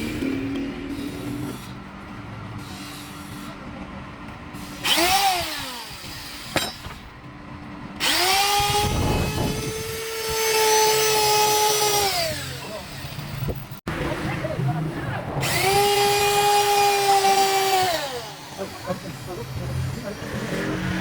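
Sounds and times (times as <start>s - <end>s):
power tool motor whining: 4.6s - 7.1s, 8.0s - 13.3s, 15.4s - 21.0s.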